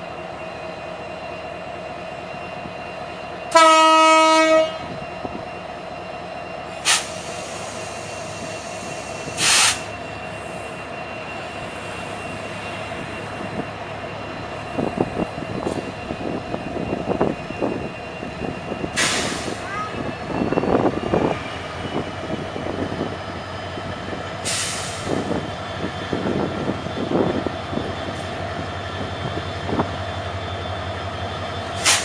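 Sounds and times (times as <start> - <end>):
locomotive horn: 3.5 - 4.9
air hissing: 6.8 - 10.7, 18.9 - 19.7, 24.4 - 25.4, 31.8 - 32.0.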